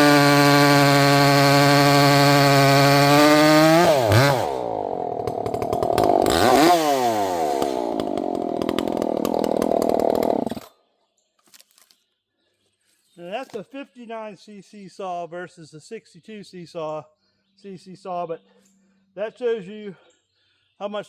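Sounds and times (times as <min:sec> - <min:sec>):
chainsaw cutting wood: 0:00.0 - 0:10.8.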